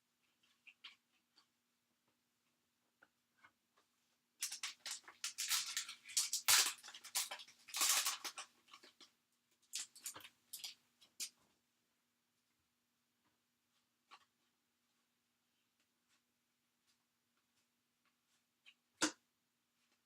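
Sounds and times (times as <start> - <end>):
cards and wrapping rustling: 4.4 - 9.1.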